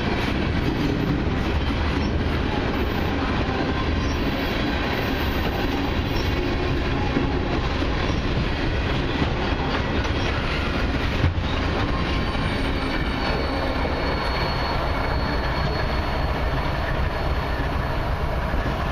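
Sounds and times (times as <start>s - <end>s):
freight train wheels rumbling: 0.0s - 18.9s
faint high wheel squeal: 9.8s - 18.9s.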